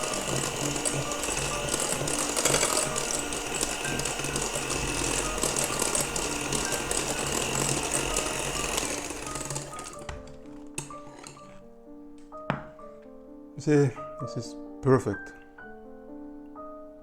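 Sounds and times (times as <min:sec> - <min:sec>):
electric mixer whisking: 0:00.0 - 0:11.6.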